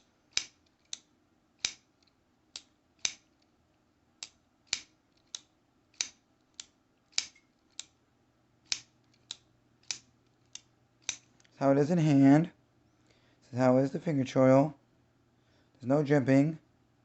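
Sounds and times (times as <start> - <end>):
folding knife clicking: 0.3 - 3.5, 4.2 - 8.0, 8.6 - 11.3.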